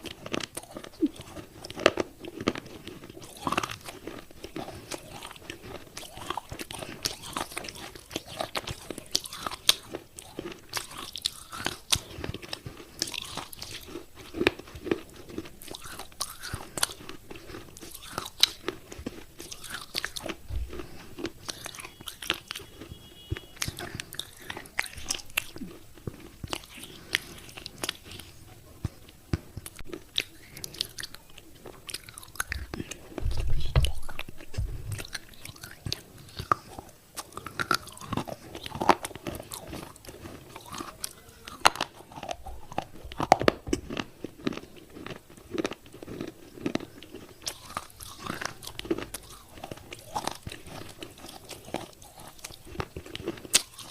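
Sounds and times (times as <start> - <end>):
clay being chewed with crunches: 0.0 - 53.9
low thump: 33.2 - 35.1.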